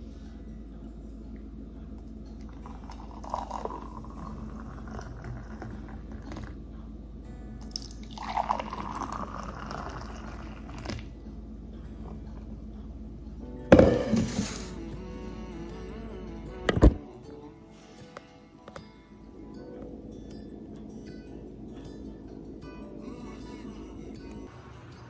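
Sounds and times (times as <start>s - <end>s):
steady low hum: 0.0s - 24.5s
liquid pouring into container: 2.5s - 6.4s, 7.7s - 11.1s.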